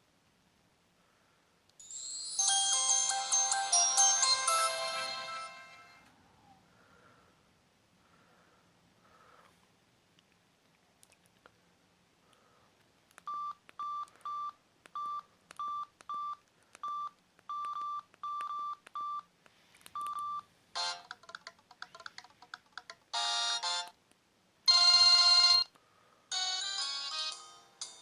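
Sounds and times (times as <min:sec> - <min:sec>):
phone keypad beeps: 0:13.3 - 0:19.3, 0:20.0 - 0:21.0.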